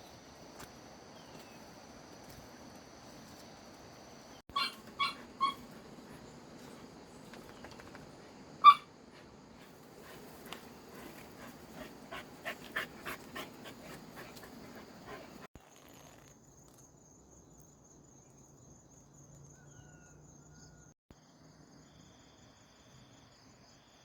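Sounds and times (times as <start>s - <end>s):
crickets chirping: 0.0s - 24.0s
dog panting: 9.2s - 15.5s.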